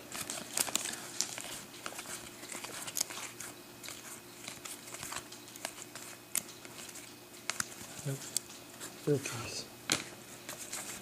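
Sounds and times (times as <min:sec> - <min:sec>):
pack wrapper crinkling: 0:00.0 - 0:08.6
trading cards being handled: 0:00.0 - 0:11.0.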